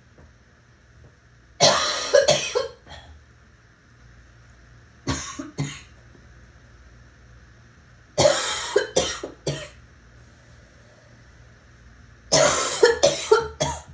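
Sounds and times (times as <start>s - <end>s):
person coughing: 1.6s - 3.2s, 5.1s - 5.9s, 8.2s - 9.8s, 12.3s - 13.9s.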